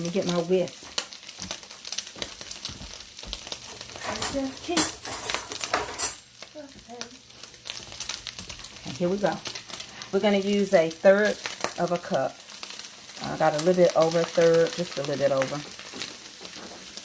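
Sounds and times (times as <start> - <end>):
grease sizzling in a frying pan: 0.0 - 17.0
utensils scraping and clinking: 3.6 - 6.2.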